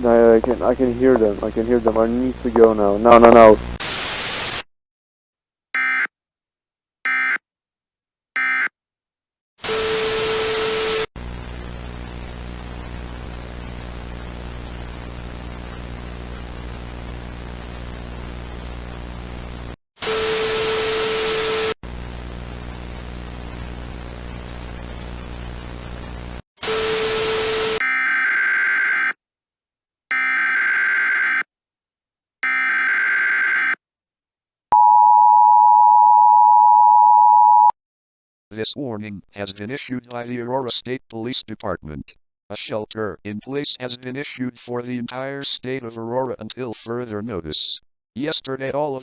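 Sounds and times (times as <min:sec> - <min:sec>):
broadcast static hiss: 0:03.8 - 0:04.6
harsh noise bursts: 0:03.8 - 0:04.7
two-tone attention signal: 0:07.1 - 0:07.4, 0:08.4 - 0:08.7, 0:34.8 - 0:37.7.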